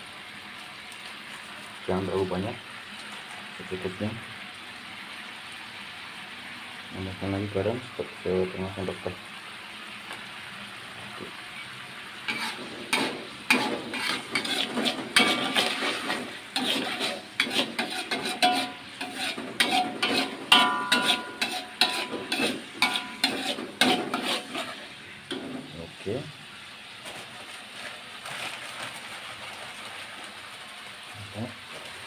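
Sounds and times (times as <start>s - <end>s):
sauce simmering and sizzling: 0.0s - 32.0s
spatula scraping metal pan: 12.2s - 25.6s.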